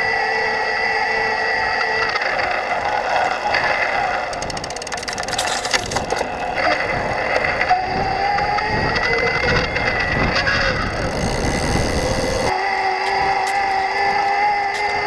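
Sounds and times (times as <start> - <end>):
electric bike motor whine: 0.0 - 15.0
rattling clicks: 3.5 - 7.8.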